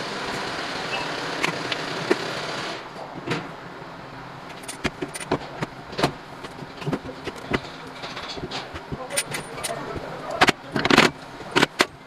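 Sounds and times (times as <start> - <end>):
metal tools clicking and tapping: 4.5 - 12.0.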